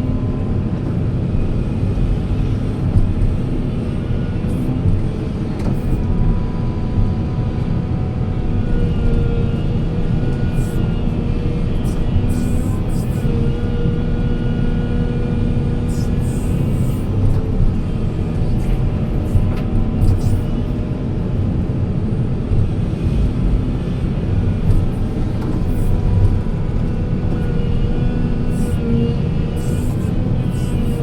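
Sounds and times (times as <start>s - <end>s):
diesel engine running under load: 0.0s - 31.0s.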